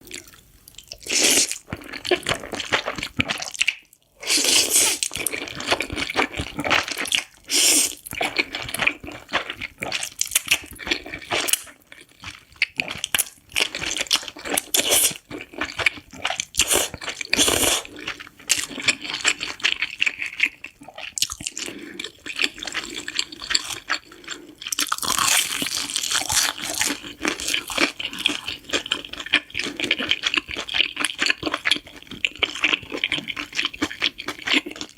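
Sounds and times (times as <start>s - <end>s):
person chewing: 0.0s - 34.9s
noodles being slurped: 4.2s - 6.8s, 16.6s - 19.4s.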